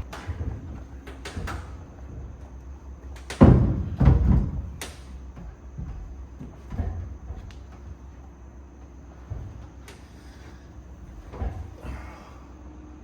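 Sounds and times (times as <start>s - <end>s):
heavy thumps: 0.0s - 12.0s
sharp knocks: 3.0s - 8.0s.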